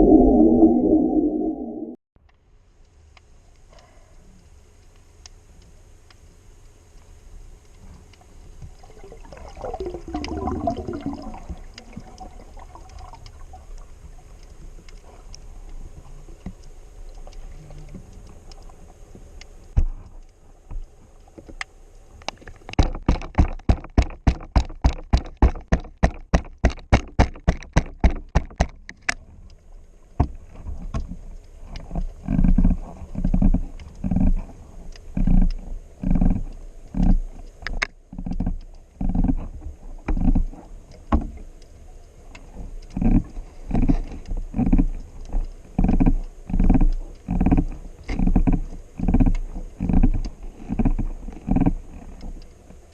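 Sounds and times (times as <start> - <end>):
low thumps: 0.0 - 2.0
underwater crackling clicks: 2.2 - 52.9
sharp knocks underwater: 22.8 - 29.1.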